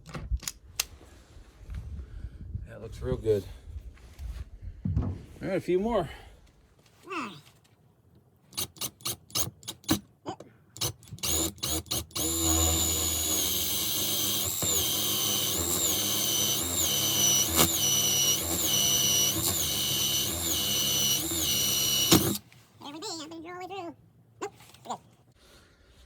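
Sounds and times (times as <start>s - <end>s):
impact driver drilling: 8.6s - 10.0s, 10.8s - 22.4s.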